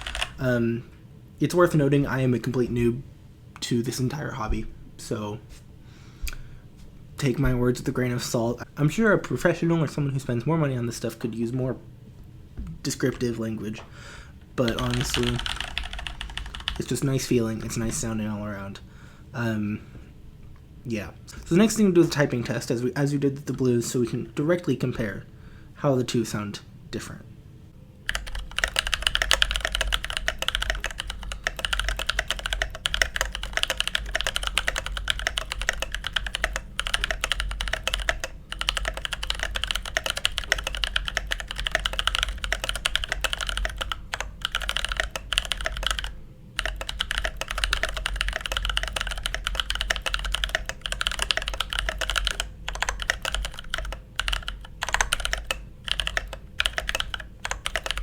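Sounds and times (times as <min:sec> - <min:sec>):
fast mechanical keyboard typing: 0:00.0 - 0:00.5, 0:14.6 - 0:17.2, 0:28.1 - 0:58.0.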